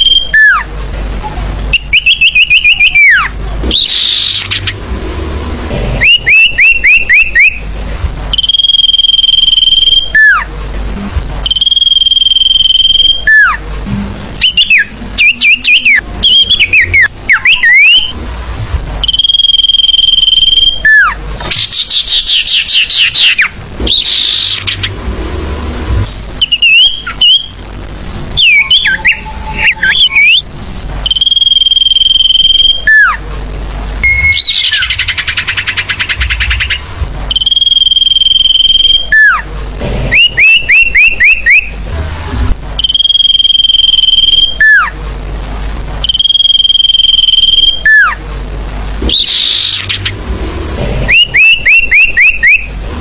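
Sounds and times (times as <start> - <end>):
bird whistling: 0.0 - 0.6, 1.7 - 4.8, 6.0 - 7.6, 8.3 - 10.5, 11.5 - 13.6, 14.4 - 18.1, 19.0 - 24.9, 26.4 - 27.6, 28.4 - 30.4, 31.0 - 33.2, 34.0 - 39.4, 40.1 - 41.7, 42.8 - 44.9, 46.0 - 48.2, 49.1 - 50.1, 51.1 - 52.7
bird chirps and trills: 0.0 - 0.7, 1.7 - 4.8, 6.0 - 10.5, 11.4 - 13.6, 14.4 - 18.2, 19.0 - 25.0, 26.0 - 27.6, 28.4 - 33.2, 34.0 - 39.4, 40.1 - 41.8, 49.0 - 50.2, 51.1 - 52.8.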